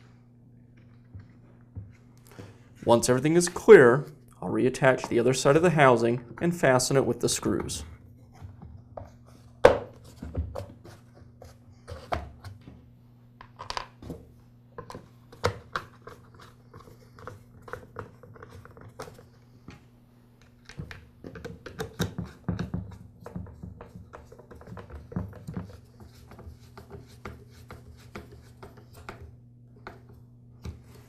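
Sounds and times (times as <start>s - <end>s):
steady low hum: 0.0s - 21.3s
plastic parts clicking and knocking: 20.5s - 25.7s.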